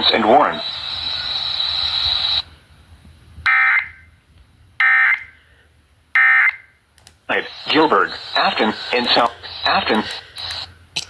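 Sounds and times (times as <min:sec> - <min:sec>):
buzzy digital data tones: 0:00.0 - 0:02.5, 0:07.3 - 0:10.7
radio hiss: 0:00.0 - 0:02.6, 0:07.2 - 0:11.0
thin high whine: 0:00.0 - 0:02.6, 0:07.3 - 0:10.8.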